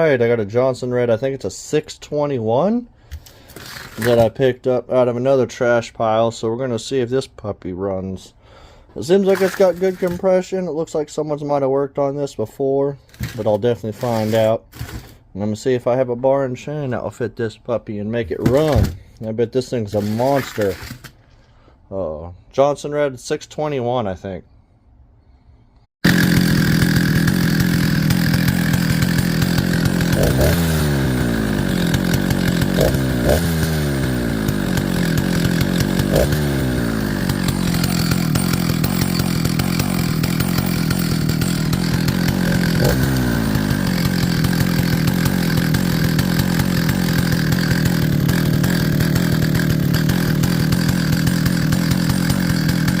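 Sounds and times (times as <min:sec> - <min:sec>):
chainsaw idling and revving: 0:03.2 - 0:04.4, 0:09.1 - 0:10.2, 0:13.0 - 0:15.2, 0:19.9 - 0:21.1, 0:26.0 - 0:53.0.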